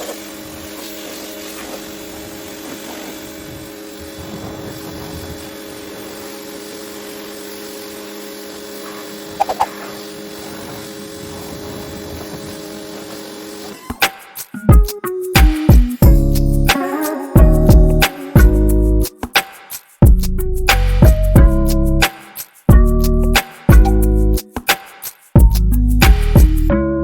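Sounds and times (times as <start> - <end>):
pressure washer humming: 0.0 - 14.5, 16.0 - 19.2.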